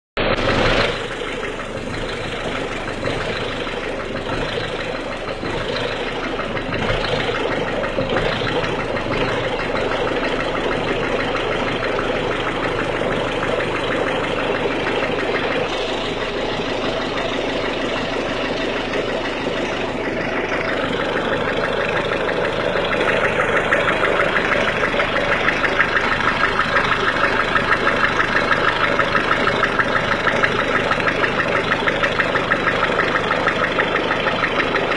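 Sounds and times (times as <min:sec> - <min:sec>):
diesel engine idling with clatter: 0:00.2 - 0:34.9.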